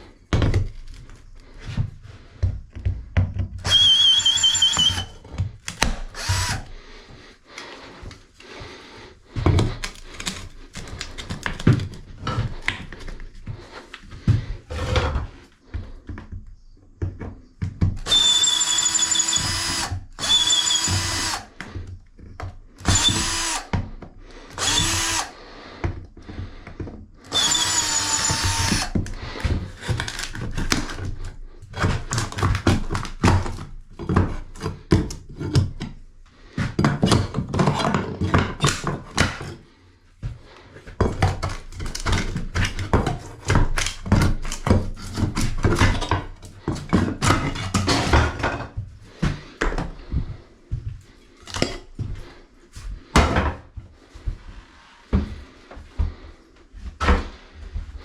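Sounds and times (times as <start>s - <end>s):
power drill whirring and spinning down: 3.6s - 5.2s, 6.1s - 6.7s, 18.0s - 21.5s, 22.8s - 23.7s, 24.6s - 25.4s, 27.3s - 29.0s
knocks and clatter of handling: 9.3s - 18.1s, 28.9s - 52.2s.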